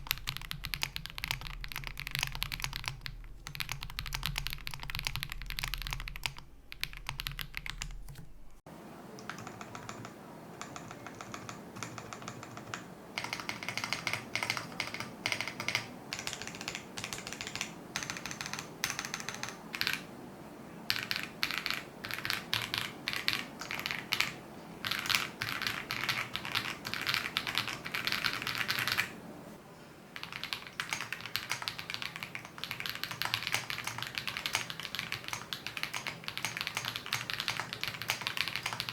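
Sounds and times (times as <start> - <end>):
typing on mechanical keyboard: 0.0 - 8.2, 9.2 - 20.1, 20.9 - 29.1, 30.2 - 38.9.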